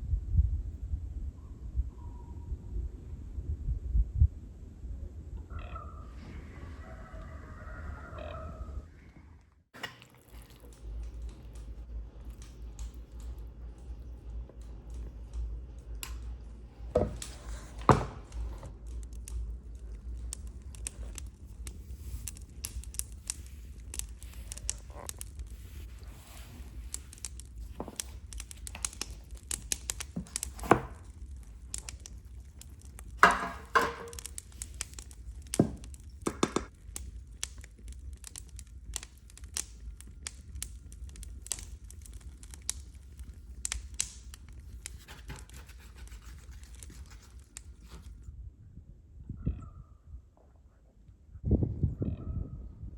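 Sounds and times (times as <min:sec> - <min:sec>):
crinkling and rustling: 0:09.1 - 0:48.3
taps and knocks: 0:33.2 - 0:34.3, 0:35.5 - 0:36.7.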